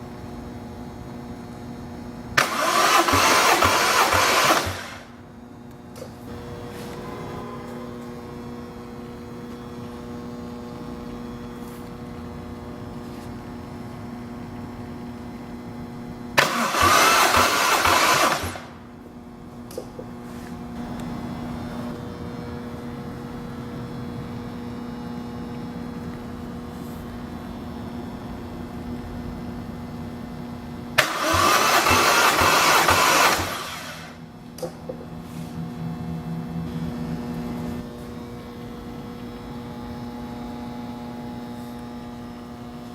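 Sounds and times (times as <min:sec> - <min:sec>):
steady hum: 0:00.0 - 0:42.9
engine cranking on starter motor: 0:02.4 - 0:05.2, 0:16.4 - 0:18.8, 0:31.0 - 0:34.2.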